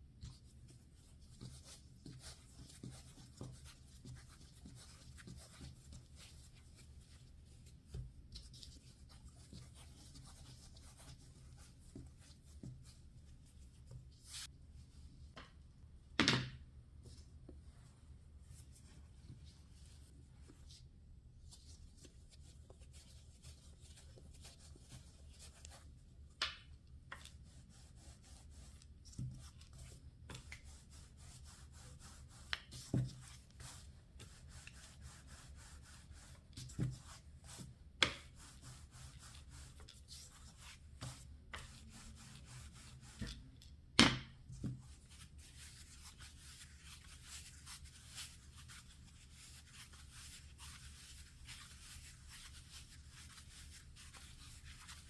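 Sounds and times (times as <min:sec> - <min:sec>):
soft rubbing: 0:00.2 - 0:15.4, 0:17.0 - 0:26.0, 0:44.5 - 0:55.0.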